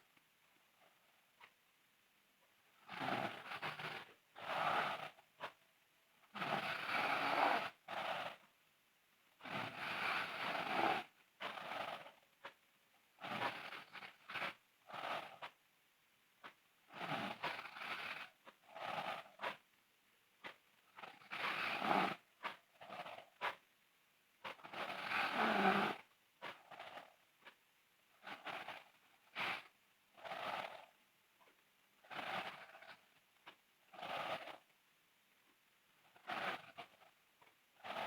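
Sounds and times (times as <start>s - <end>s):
person snoring loudly: 24.8s - 26.0s.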